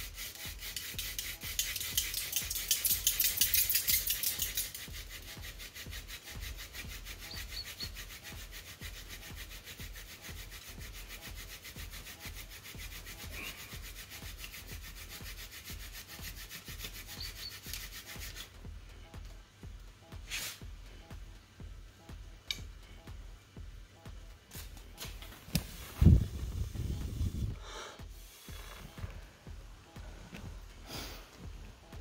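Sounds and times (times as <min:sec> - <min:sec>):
wooden hand drill scraping: 0:00.0 - 0:18.6.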